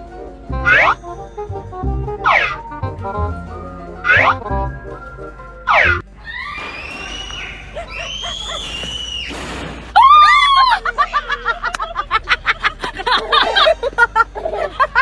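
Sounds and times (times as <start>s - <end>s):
rapid high chattering: 0.5s - 4.8s
high-pitched scream: 5.6s - 9.4s, 10.0s - 10.8s.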